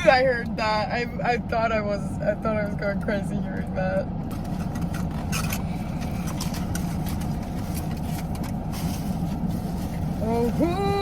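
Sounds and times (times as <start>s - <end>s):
car cabin rumble: 0.0s - 11.0s
plastic packaging rustling: 4.4s - 10.8s.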